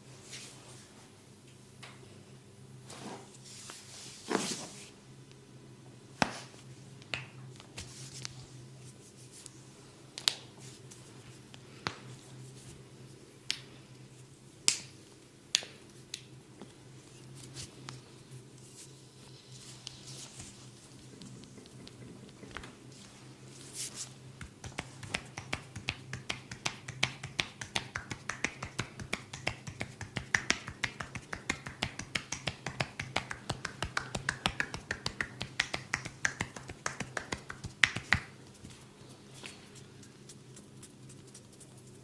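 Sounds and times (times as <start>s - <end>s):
hands snapping and clicking: 7.0s - 7.4s, 13.5s - 13.7s, 14.6s - 14.9s, 15.5s - 16.3s, 24.4s - 38.4s.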